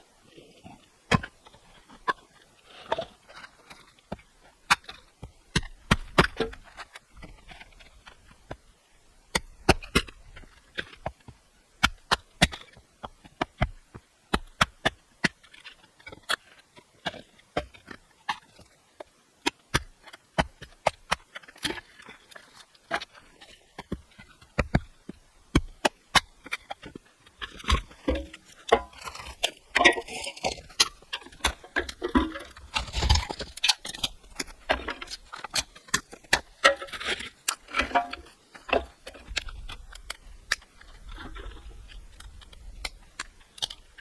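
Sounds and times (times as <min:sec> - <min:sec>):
firewood being chopped: 0:25.5 - 0:40.6.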